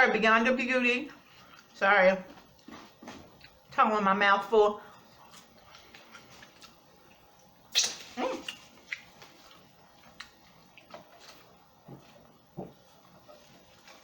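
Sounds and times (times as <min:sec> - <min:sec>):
chewing and mouth sounds: 0:01.2 - 0:03.7, 0:05.0 - 0:12.4.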